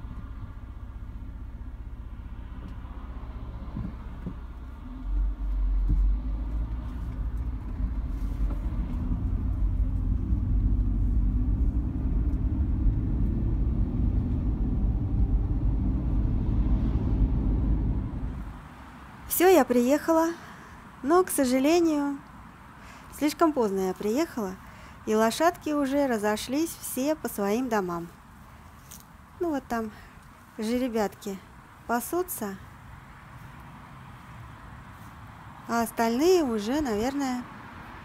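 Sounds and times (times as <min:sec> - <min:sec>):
car engine and tyre noise: 0:00.0 - 0:19.3, 0:32.6 - 0:38.0.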